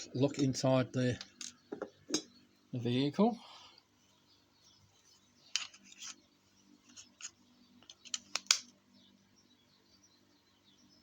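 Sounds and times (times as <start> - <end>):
metal toy clicks and scrapes: 5.5 - 6.2, 6.8 - 8.6.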